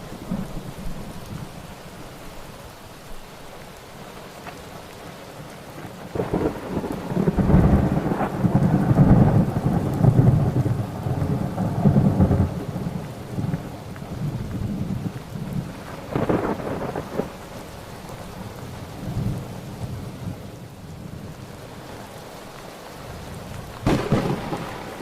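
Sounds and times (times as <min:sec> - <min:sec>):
steady rain: 0:00.0 - 0:25.0
thunder rumbling: 0:05.8 - 0:17.6, 0:23.1 - 0:25.0.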